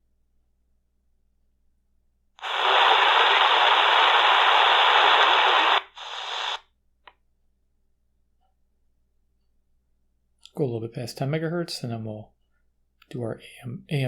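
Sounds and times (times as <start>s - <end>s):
radio static hiss: 2.4s - 6.6s.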